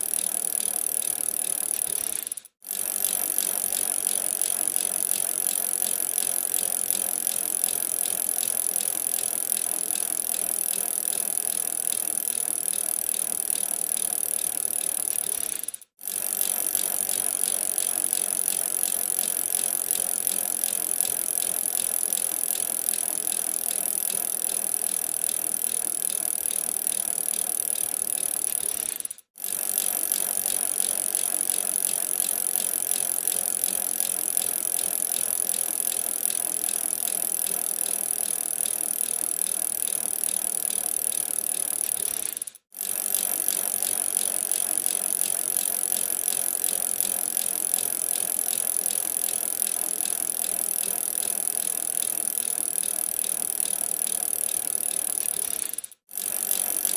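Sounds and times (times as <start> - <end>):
bicycle drivetrain ticking: 0.0 - 56.9.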